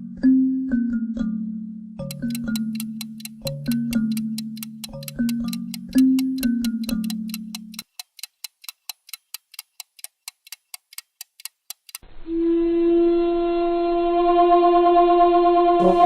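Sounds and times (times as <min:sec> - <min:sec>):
mechanical clock ticking: 0:02.1 - 0:12.0.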